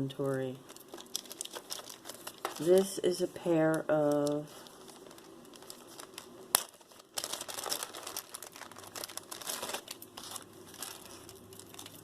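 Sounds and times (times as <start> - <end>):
packaging crinkling: 0.0 - 12.0.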